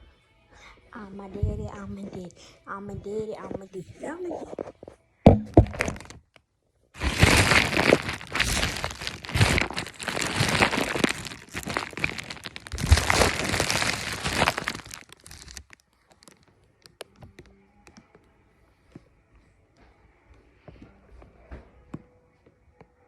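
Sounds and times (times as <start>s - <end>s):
crinkling and rustling: 3.3s - 6.4s, 7.0s - 17.6s.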